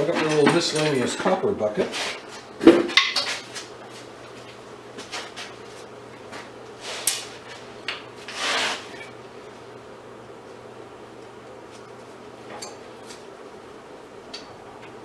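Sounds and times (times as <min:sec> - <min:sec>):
faint steady hum: 0:00.0 - 0:15.0
short scrape: 0:08.3 - 0:08.9.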